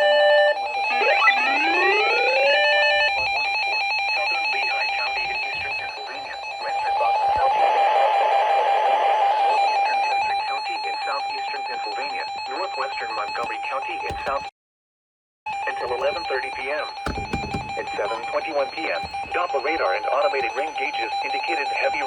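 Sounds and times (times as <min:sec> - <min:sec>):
rising whoop alarm: 0:00.0 - 0:03.8, 0:07.2 - 0:10.1
steady high tone: 0:00.0 - 0:09.9
warbling alarm: 0:00.0 - 0:14.5, 0:15.5 - 0:22.0.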